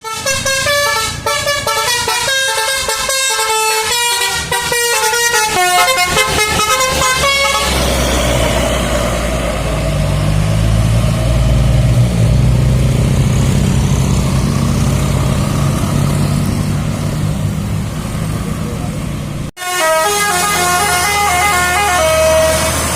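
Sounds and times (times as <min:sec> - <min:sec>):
multi-tone bus horn melody: 0:00.0 - 0:09.2, 0:19.6 - 0:22.9
bus engine running loud: 0:00.0 - 0:22.9.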